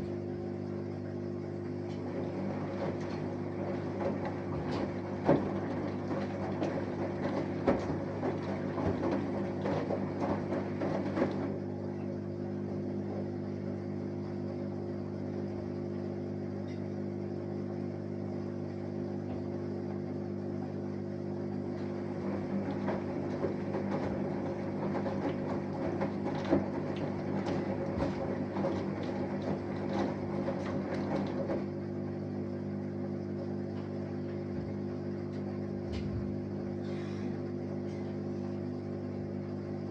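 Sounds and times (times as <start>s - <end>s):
washing machine hum: 0.0s - 39.9s
laundry tumbling and sloshing: 1.7s - 11.9s, 19.2s - 37.0s.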